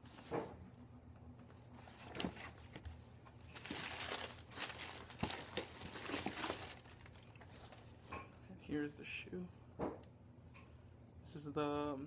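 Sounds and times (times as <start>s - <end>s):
paper packing crinkling: 1.8s - 8.0s.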